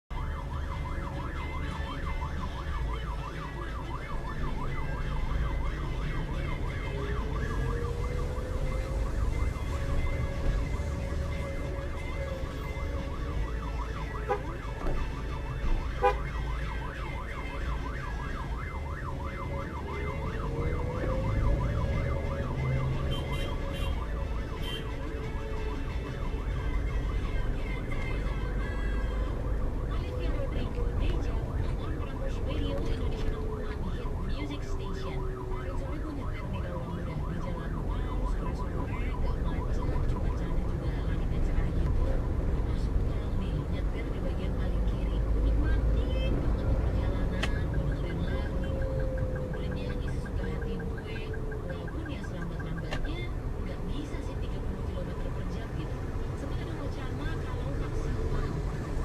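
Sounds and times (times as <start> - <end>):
road and engine rumble: 0.0 - 59.0
electronic siren warbling: 0.1 - 24.9
siren rising wails: 0.1 - 59.0.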